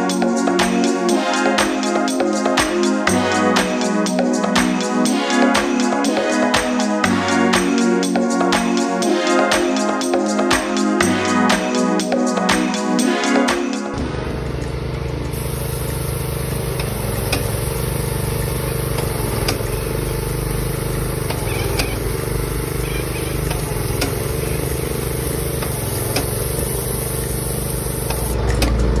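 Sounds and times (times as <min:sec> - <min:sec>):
engine running steadily: 0:14.0 - 0:29.0
sharp ticks: 0:14.6 - 0:17.7.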